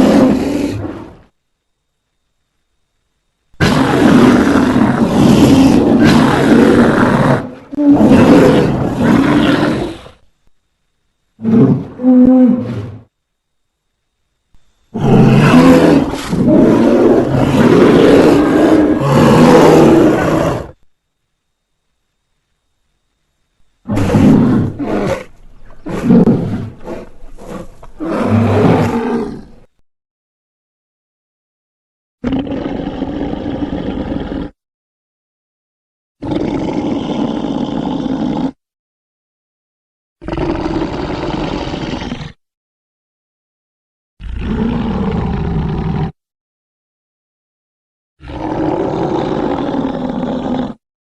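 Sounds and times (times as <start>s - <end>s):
grizzly bear roaring: 0.0s - 1.3s, 3.6s - 10.2s, 11.4s - 13.1s, 14.9s - 20.8s, 23.8s - 29.8s, 32.2s - 34.6s, 36.2s - 38.6s, 40.2s - 42.4s, 44.2s - 46.2s, 48.2s - 50.8s.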